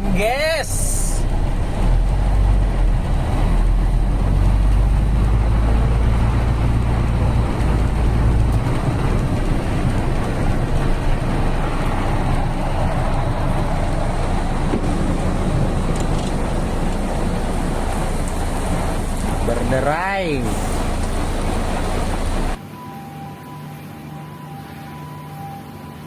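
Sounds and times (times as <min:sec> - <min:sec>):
rain hiss: 0:03.4 - 0:22.6.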